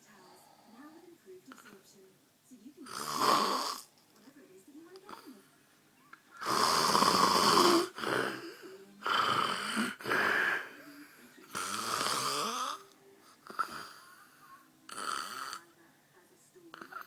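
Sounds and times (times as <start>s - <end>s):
man snoring loudly: 2.9s - 3.8s, 6.4s - 10.7s, 11.5s - 12.8s, 14.9s - 15.6s.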